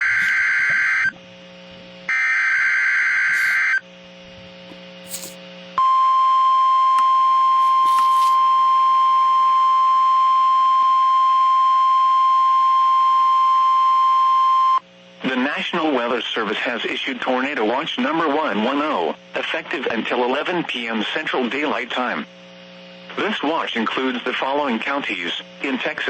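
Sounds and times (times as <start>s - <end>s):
steady warning alarm tone: 0.0s - 1.2s, 2.1s - 3.8s.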